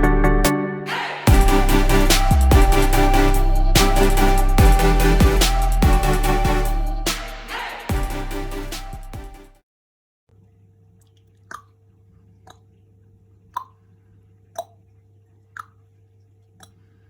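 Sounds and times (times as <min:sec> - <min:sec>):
background music: 0:00.0 - 0:09.6.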